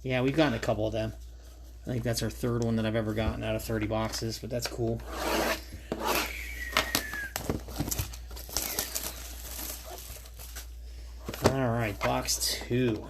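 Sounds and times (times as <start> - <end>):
packaging rustling and crinkling: 6.6 - 13.0.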